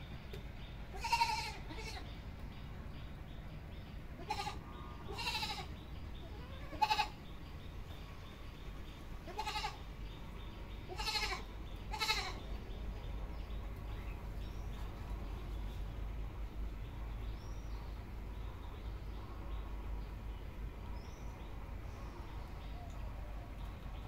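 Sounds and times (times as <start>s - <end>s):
steady low rumble: 0.0s - 24.0s
goat bleating: 0.9s - 2.1s, 4.2s - 7.2s, 9.2s - 9.8s, 10.9s - 12.4s.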